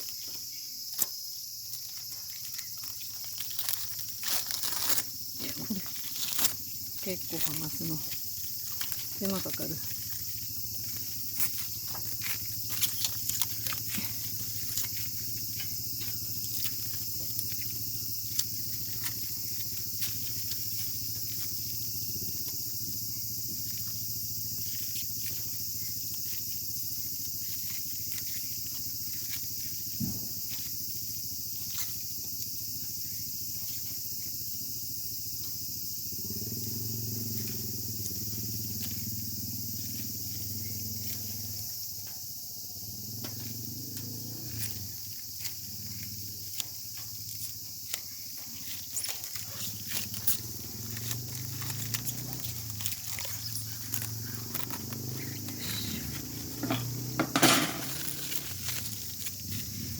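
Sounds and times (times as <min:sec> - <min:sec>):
insects trilling: 0:00.0 - 0:59.9
protective film peeling crackles: 0:01.7 - 0:10.2, 0:48.9 - 0:57.0.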